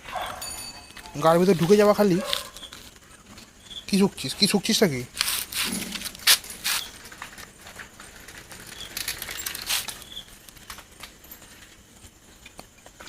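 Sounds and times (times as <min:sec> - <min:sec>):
faint scuffing and rustling: 0:00.0 - 0:03.5.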